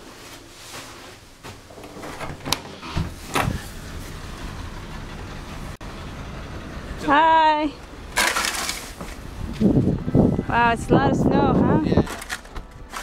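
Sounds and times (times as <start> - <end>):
door pushed open: 1.7 - 3.7
wind noise with low rumble: 9.0 - 13.0.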